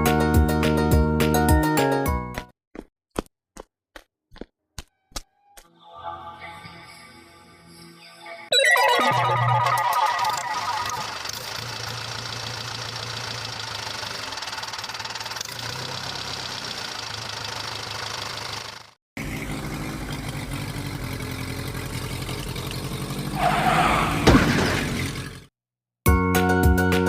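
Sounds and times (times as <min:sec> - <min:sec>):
tractor engine idling: 0:10.8 - 0:23.4.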